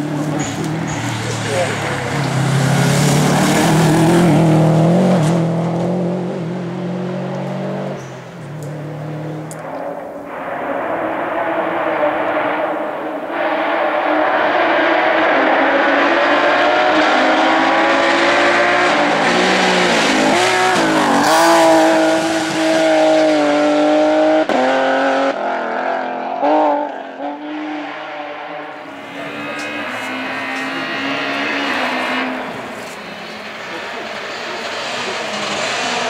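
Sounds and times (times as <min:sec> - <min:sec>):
rally car engine revving: 0:00.0 - 0:36.0.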